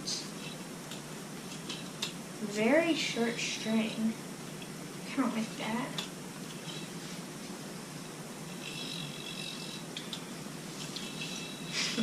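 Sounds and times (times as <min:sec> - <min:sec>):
yo-yo spinning whir: 0:00.0 - 0:03.7, 0:05.9 - 0:12.0
string brushing: 0:05.7 - 0:12.0.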